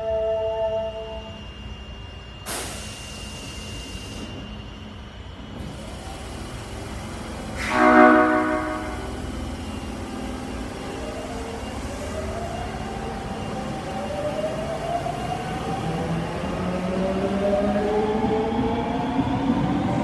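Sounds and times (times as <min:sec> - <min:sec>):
rush of train noise: 0:00.0 - 0:20.0
train horn blast: 0:07.6 - 0:09.2.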